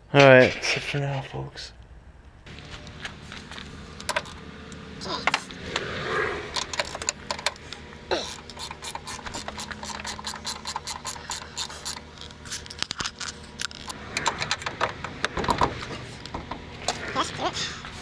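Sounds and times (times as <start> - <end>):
steady low hum: 1.2 - 18.0
ratchet wrench clicking: 8.2 - 14.0.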